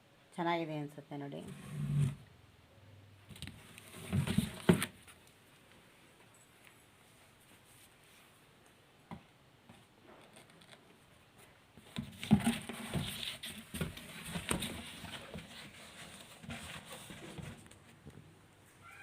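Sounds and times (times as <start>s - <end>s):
packaging rustling and light knocks: 3.4s - 5.2s.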